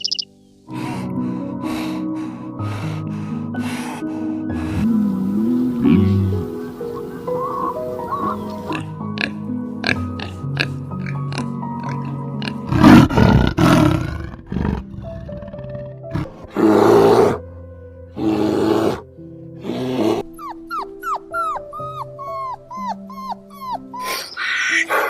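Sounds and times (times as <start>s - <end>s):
short falling chirps: 0.0s - 0.2s
background music: 0.0s - 25.0s.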